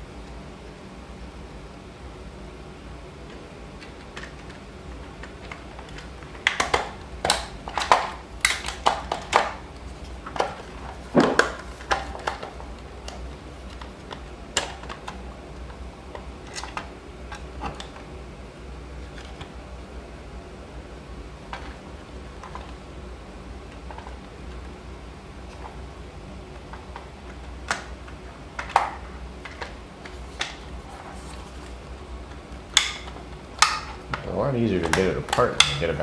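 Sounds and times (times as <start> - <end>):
plastic parts clicking and knocking: 3.3 - 18.1, 26.5 - 36.0.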